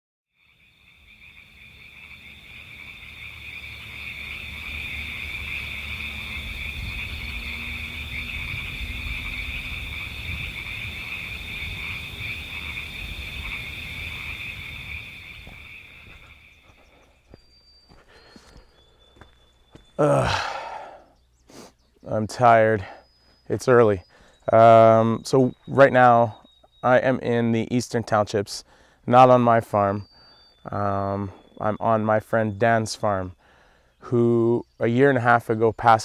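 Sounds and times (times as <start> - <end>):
chorus of calling frogs: 0.4 - 17.2.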